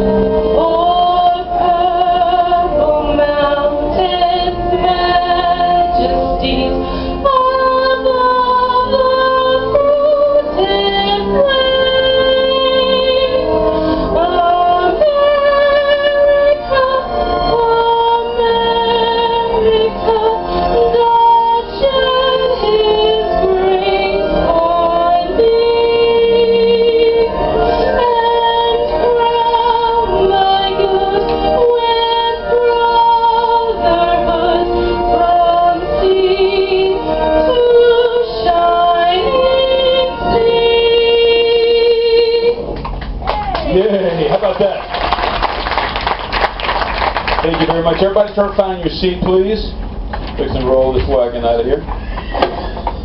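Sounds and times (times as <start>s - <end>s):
musical accompaniment: 0.0s - 53.0s
woman singing: 0.5s - 42.6s.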